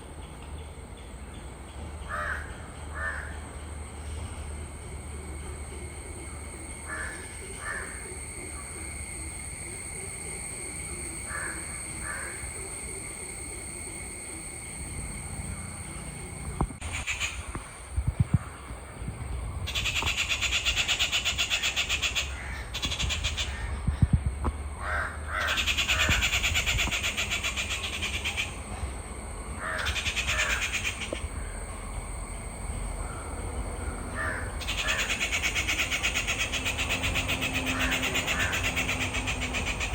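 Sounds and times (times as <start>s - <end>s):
outdoor ambience: 0.0s - 39.9s
crows cawing: 2.1s - 3.4s, 6.8s - 8.1s, 11.3s - 12.5s, 19.7s - 23.8s, 24.8s - 28.6s, 29.6s - 31.6s, 33.0s - 39.9s
high pulsing drone: 2.5s - 39.9s.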